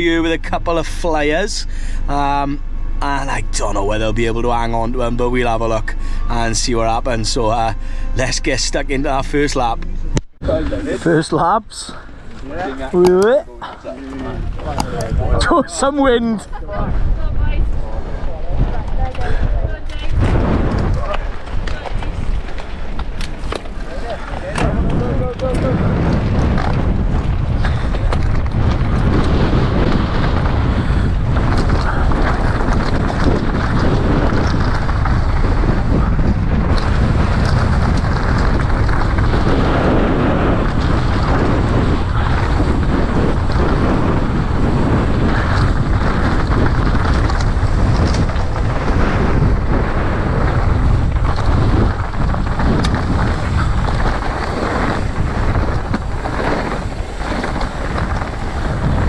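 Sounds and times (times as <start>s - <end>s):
wind buffeting microphone: 0.0s - 59.0s
bike knocking and rattling: 17.7s - 59.0s.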